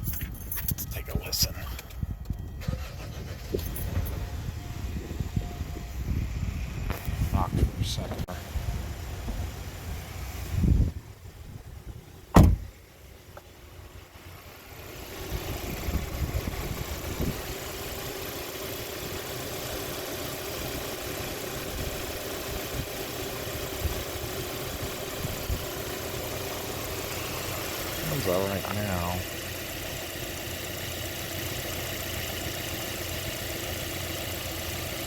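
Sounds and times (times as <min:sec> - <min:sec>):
car engine idling: 0:00.0 - 0:35.0
low engine thumps: 0:06.8 - 0:10.0, 0:12.2 - 0:13.6.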